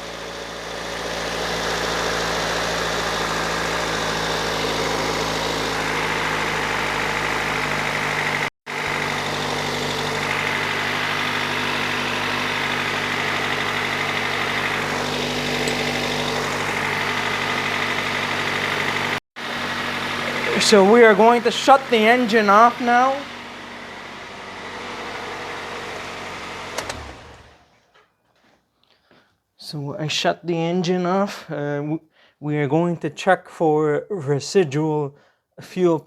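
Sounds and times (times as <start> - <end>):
car engine idling: 0.0 - 27.7.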